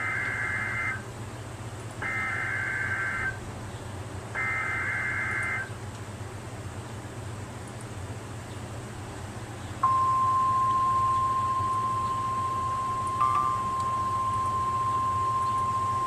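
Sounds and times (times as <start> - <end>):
radio hiss: 0.0 - 1.0, 2.0 - 3.4
screechy two-tone data bursts: 2.0 - 3.4, 4.4 - 5.7.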